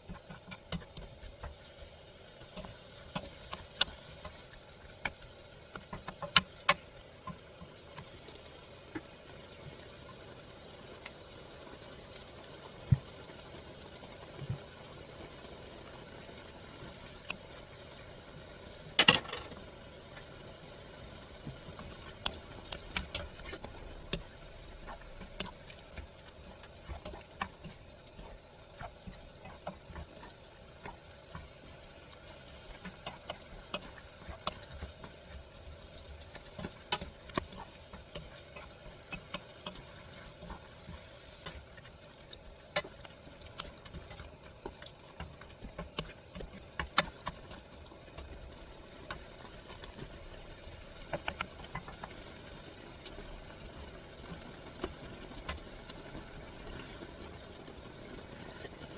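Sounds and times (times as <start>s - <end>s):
utensil scraping frying pan: 21.5s - 41.9s.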